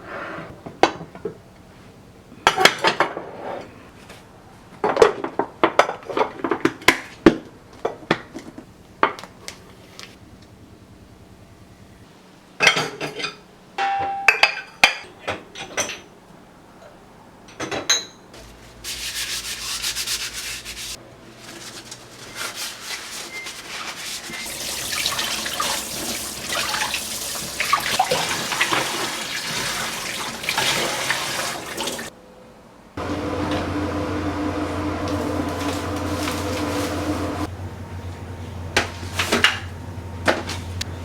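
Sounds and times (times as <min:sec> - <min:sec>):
scrubbing: 0:18.7 - 0:32.1, 0:33.9 - 0:37.5
water running: 0:24.0 - 0:32.1, 0:33.0 - 0:37.5
containers clinking and knocking: 0:33.0 - 0:37.5.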